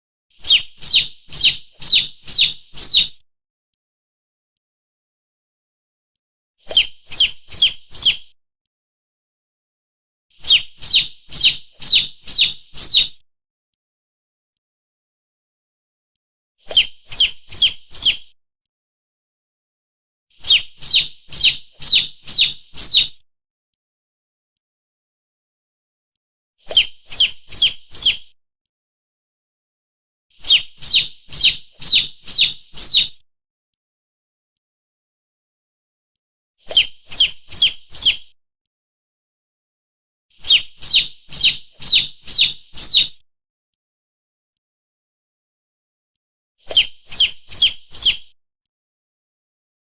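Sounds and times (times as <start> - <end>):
shrill squeaks of lure call: 0.4 - 3.2, 6.7 - 8.3, 10.4 - 13.2, 16.7 - 18.3, 20.3 - 23.2, 26.7 - 28.4, 30.3 - 33.2, 36.7 - 38.3, 40.3 - 43.2, 46.7 - 48.4.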